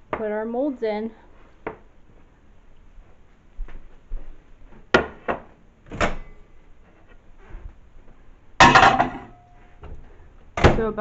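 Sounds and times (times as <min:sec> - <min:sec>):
kitchen knocks and clunks: 0:04.9 - 0:06.3, 0:08.6 - 0:10.0.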